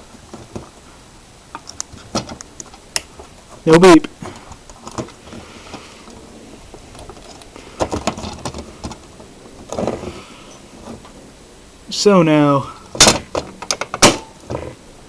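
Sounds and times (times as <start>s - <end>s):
short rustle: 1.9s - 11.9s.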